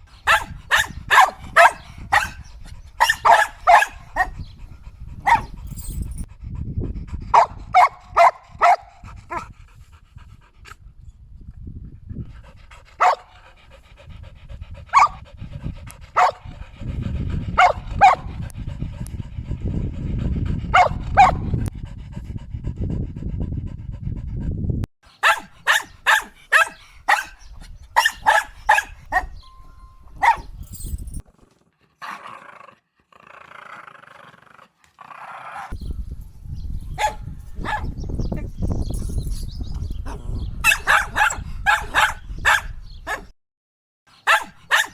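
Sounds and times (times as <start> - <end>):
dog barking: 0.2 - 4.6, 5.2 - 5.6, 7.4 - 9.4, 13.0 - 13.4, 14.9 - 15.2, 16.2 - 16.6, 17.6 - 18.5, 20.7 - 21.5, 25.2 - 29.5, 30.2 - 30.6, 36.9 - 38.0, 40.0 - 43.3, 44.2 - 44.9.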